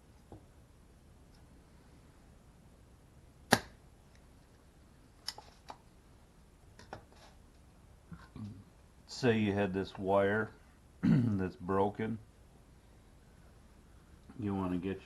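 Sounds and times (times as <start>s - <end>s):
desoldering pump snap: 3.5s - 3.8s.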